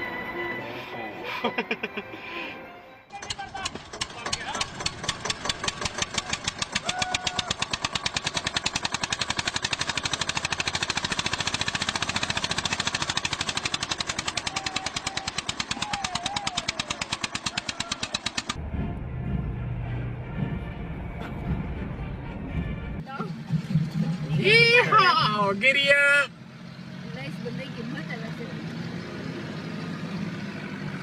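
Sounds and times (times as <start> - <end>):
heavy machinery knocking: 3.1 - 22.8
low rumble: 18.6 - 25.3.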